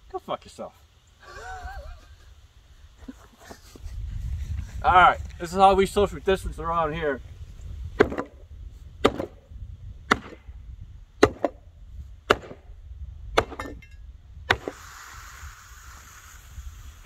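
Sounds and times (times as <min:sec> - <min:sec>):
axe chopping on pistol: 0:08.0 - 0:08.4, 0:09.0 - 0:09.4, 0:10.1 - 0:10.5, 0:11.2 - 0:11.6, 0:12.2 - 0:12.7, 0:13.4 - 0:13.8, 0:14.5 - 0:14.8.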